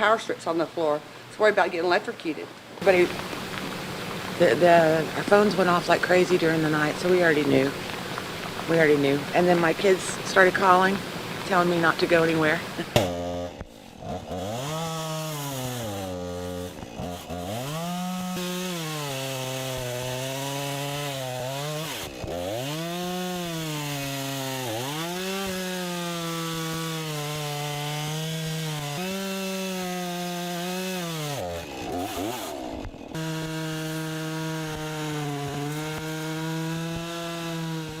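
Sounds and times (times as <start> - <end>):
engine revving: 8.6 - 38.0.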